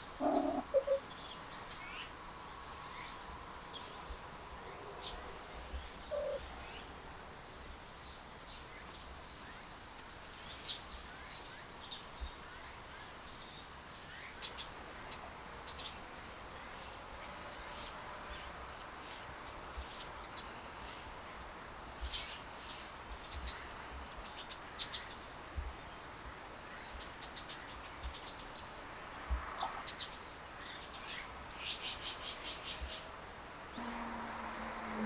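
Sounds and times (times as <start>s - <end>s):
small birds chirping: 0.0s - 2.1s, 5.0s - 6.9s
steady low hum: 33.7s - 35.0s.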